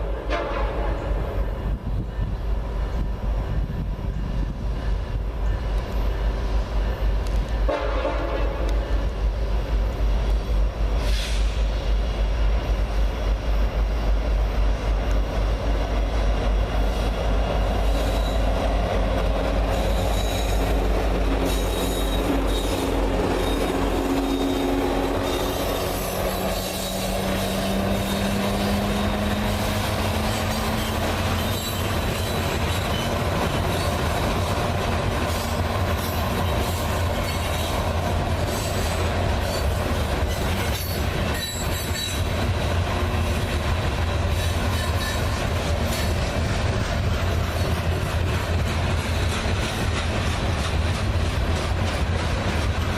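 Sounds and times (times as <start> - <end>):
rail cars clacking over joints: 0.0 - 52.9
locomotive horn: 0.2 - 1.2, 7.7 - 8.9
wheel squeal: 19.7 - 20.7, 21.4 - 29.5, 30.2 - 34.0, 38.4 - 42.3.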